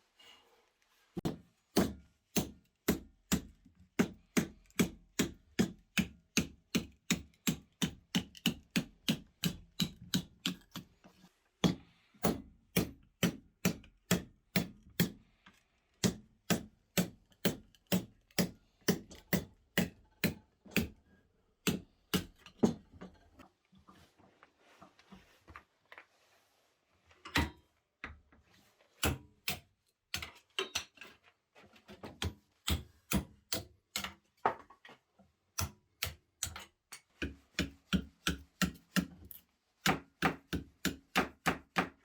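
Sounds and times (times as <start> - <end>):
hand tool striking wood: 1.2 - 10.8, 16.0 - 21.0, 35.6 - 39.2, 39.8 - 42.0.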